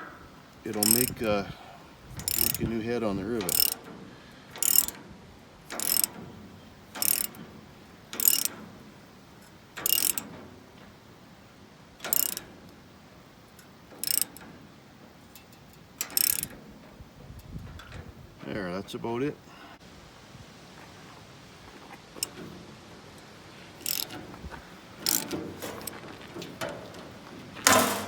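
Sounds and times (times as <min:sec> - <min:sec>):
riveting tool metallic clicks: 0:00.5 - 0:01.5, 0:02.1 - 0:08.8, 0:09.4 - 0:11.0, 0:12.0 - 0:12.8, 0:13.5 - 0:18.5, 0:22.2 - 0:28.0.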